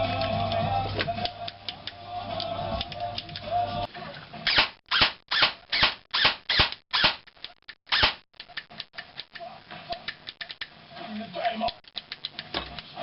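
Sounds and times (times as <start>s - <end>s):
airsoft gun shots: 4.5s - 7.2s, 7.9s - 8.2s.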